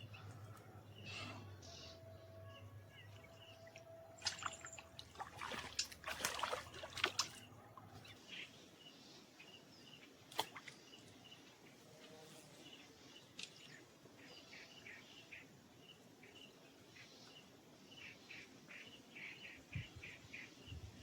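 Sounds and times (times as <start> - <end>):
water splashing: 3.1 - 8.1.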